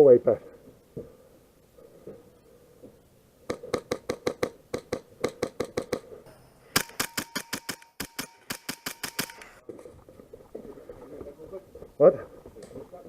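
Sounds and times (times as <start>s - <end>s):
airsoft guns firing: 3.5s - 6.1s, 6.7s - 9.6s
faint high whine: 6.2s - 8.5s.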